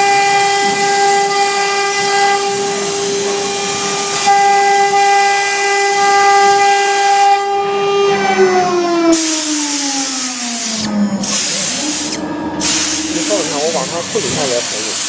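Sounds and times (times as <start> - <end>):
router spindle high whine: 0.0 - 15.0
cutting hiss: 9.2 - 15.0.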